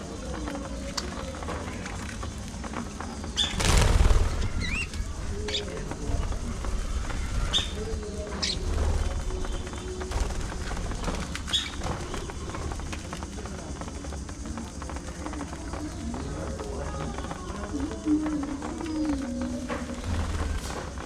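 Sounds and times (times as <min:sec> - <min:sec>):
wings flapping: 0:00.0 - 0:21.0
budgerigars chirping: 0:03.4 - 0:05.8, 0:07.4 - 0:07.8, 0:11.5 - 0:12.0.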